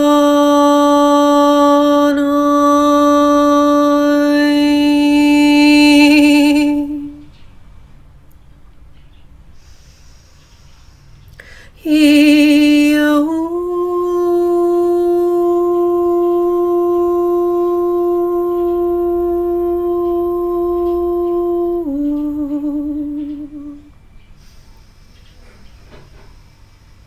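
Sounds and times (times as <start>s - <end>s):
person toning sustained notes: 0.0s - 7.3s, 11.8s - 23.9s.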